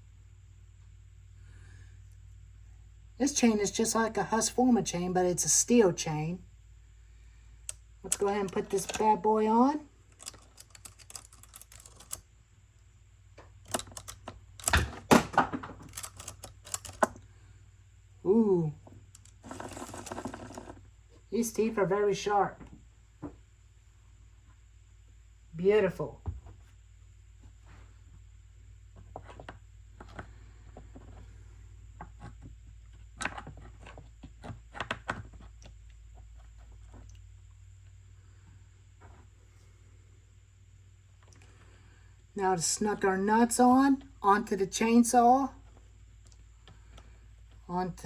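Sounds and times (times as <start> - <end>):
chain metallic clicks and rattles: 8.1 - 12.3, 13.6 - 15.1, 15.7 - 17.2.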